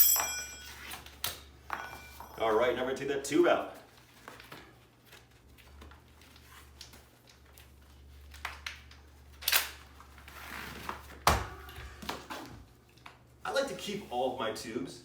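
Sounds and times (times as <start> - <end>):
rubbery rustling of inner tube: 9.9 - 11.2.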